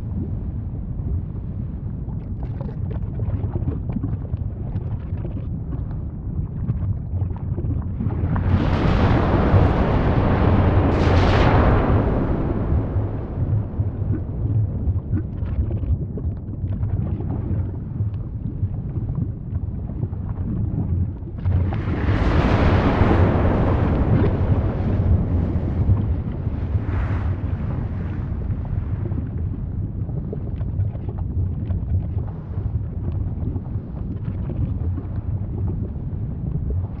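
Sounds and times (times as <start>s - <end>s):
volcanic eruption rumble: 0.0s - 37.0s
hissing volcanic blast: 8.2s - 15.0s, 21.9s - 28.5s.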